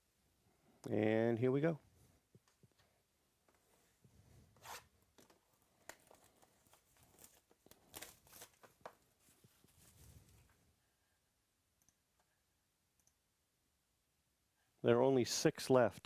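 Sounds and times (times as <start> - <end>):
plastic wrapping tearing: 4.6 - 9.1
small clicks and rustles: 5.1 - 10.7.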